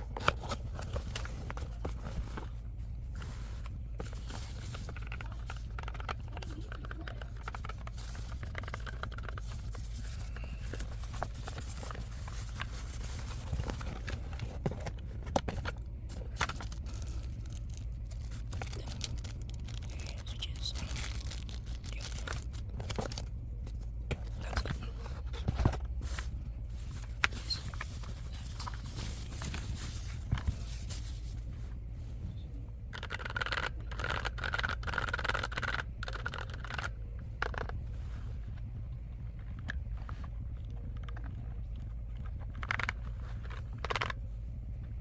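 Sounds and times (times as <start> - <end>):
steady low hum: 0.0 - 45.0
packaging scraping and tearing: 3.7 - 31.2.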